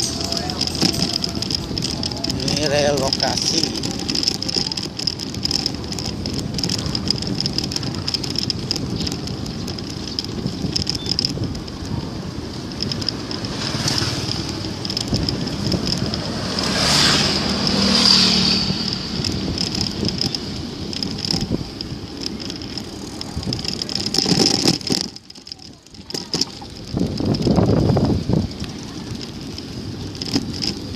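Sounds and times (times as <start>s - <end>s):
wind and road noise: 0.0s - 30.9s
vehicle passing: 11.4s - 24.2s.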